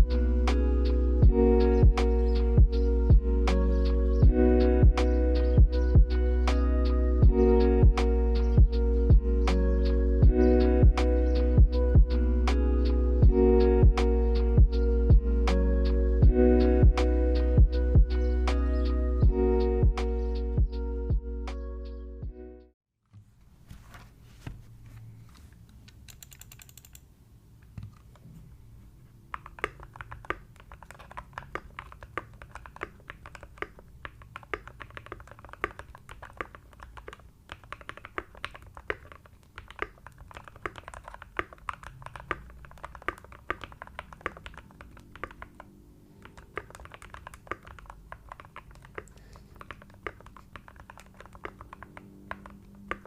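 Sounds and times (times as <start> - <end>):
mechanical keyboard typing: 25.9 - 27.1, 29.2 - 53.0.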